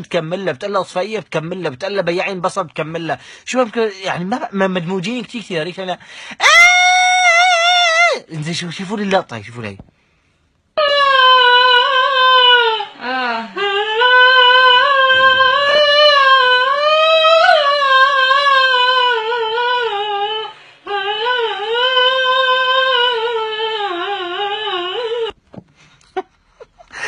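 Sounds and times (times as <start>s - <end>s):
girl singing long wavering notes: 10.8s - 25.4s.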